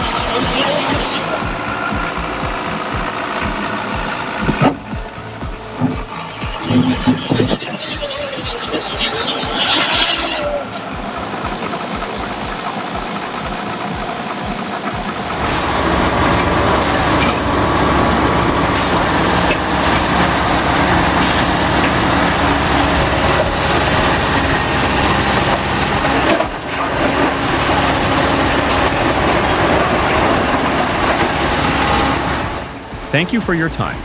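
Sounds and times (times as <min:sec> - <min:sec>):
diesel excavator running: 0:15.1 - 0:33.9.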